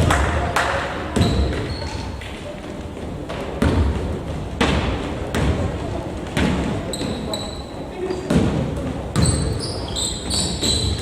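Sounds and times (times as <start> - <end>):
basketball bouncing on gym floor: 1.1 - 1.9, 3.3 - 7.4, 8.1 - 11.0.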